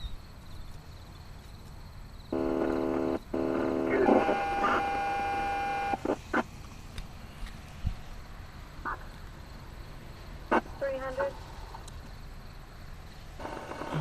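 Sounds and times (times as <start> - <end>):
radio static bursts: 2.3 - 6.6, 10.5 - 11.4, 13.4 - 14.0.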